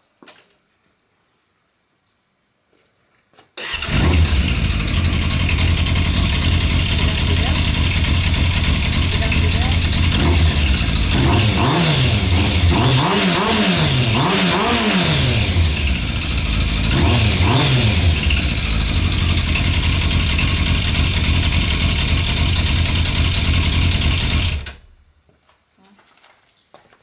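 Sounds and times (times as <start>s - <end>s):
motorcycle engine idling and revving: 3.6s - 25.0s.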